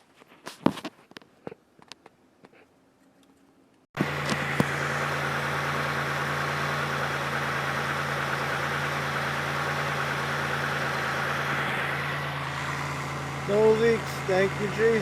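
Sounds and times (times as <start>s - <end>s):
car engine idling: 4.0s - 15.0s.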